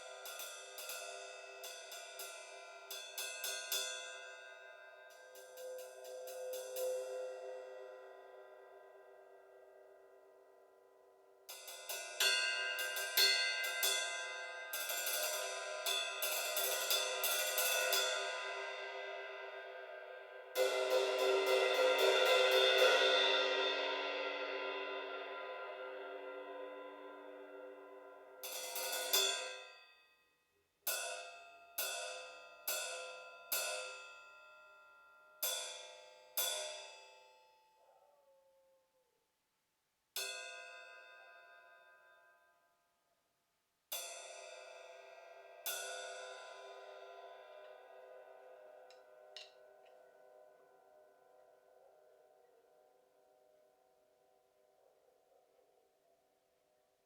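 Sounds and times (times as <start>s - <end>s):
ride cymbal struck and ringing: 0.0s - 8.7s, 11.5s - 30.0s.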